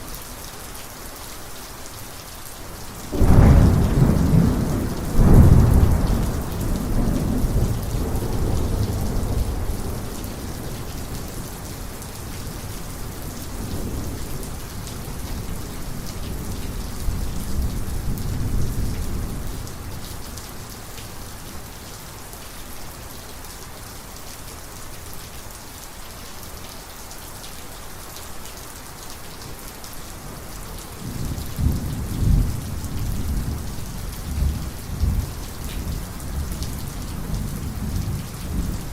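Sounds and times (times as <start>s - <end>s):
steady rain falling: 0.0s - 38.9s
thunder rumbling: 3.1s - 10.8s.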